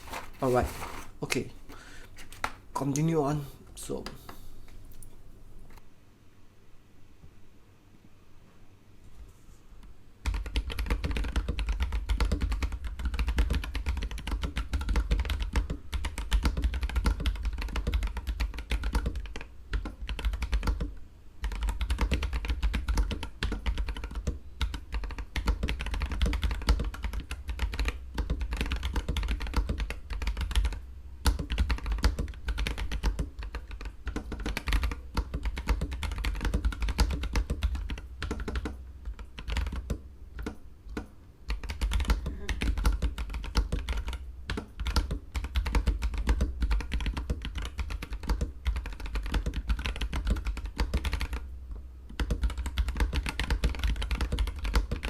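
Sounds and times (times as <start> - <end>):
fast mechanical keyboard typing: 10.2 - 40.6, 41.5 - 51.4, 52.1 - 55.0.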